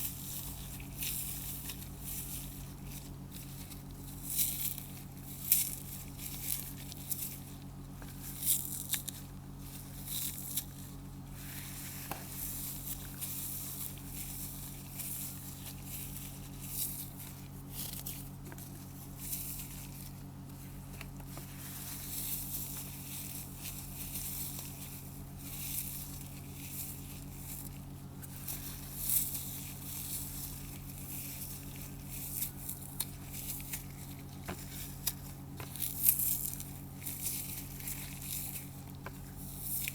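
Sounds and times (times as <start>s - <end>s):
floral foam crunching: 0.0s - 39.9s.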